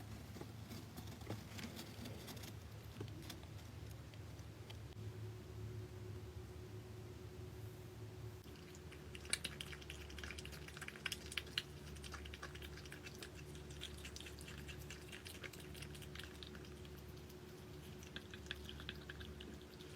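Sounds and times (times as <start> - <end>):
faint steady hum: 0.0 - 19.9.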